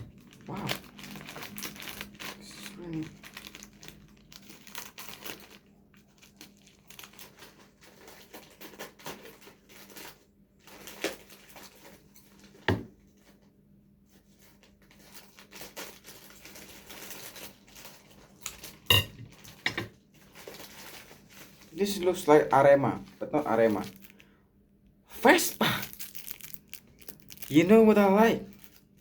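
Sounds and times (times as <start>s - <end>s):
packaging crinkled and torn: 0.0s - 12.6s, 14.3s - 24.4s, 25.1s - 29.0s.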